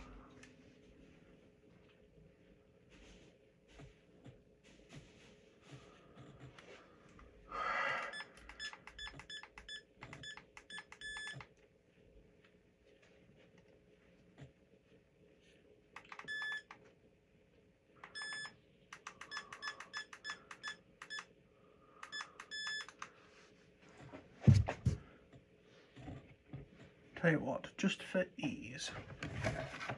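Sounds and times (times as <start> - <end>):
short electronic beeps: 22.1 - 23.0.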